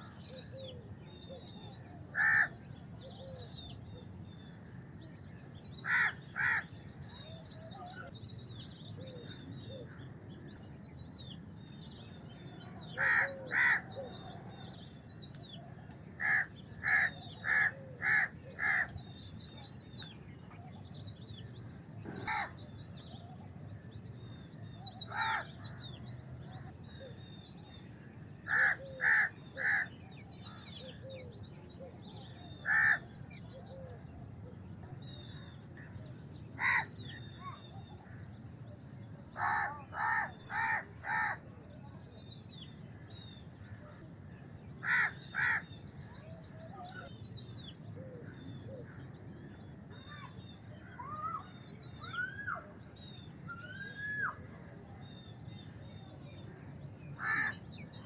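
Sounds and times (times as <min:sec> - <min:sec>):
small birds chirping: 0:00.0 - 0:58.0
crows cawing: 0:02.1 - 0:02.6, 0:05.8 - 0:06.8, 0:12.9 - 0:14.1, 0:16.2 - 0:19.0, 0:22.1 - 0:22.6, 0:25.1 - 0:25.8, 0:28.5 - 0:30.0, 0:32.6 - 0:33.1, 0:36.6 - 0:36.9, 0:39.4 - 0:41.4, 0:44.8 - 0:45.7, 0:57.2 - 0:57.6.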